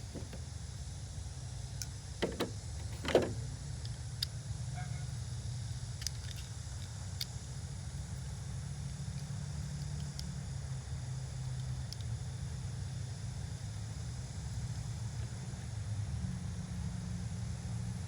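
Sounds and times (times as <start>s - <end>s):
metal parts and tools handled: 2.2s - 3.5s.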